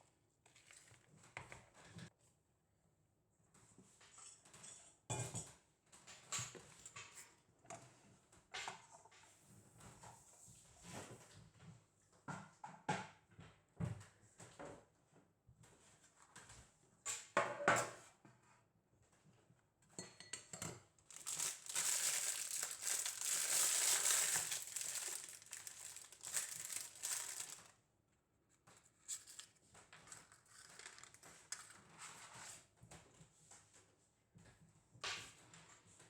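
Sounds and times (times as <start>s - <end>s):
crinkling and rustling: 21.0s - 27.8s, 28.6s - 32.6s.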